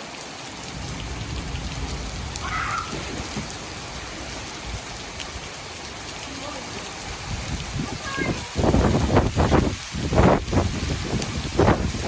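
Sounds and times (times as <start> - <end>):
heavy rain pouring: 0.0 - 12.0
low rumble: 0.7 - 5.2.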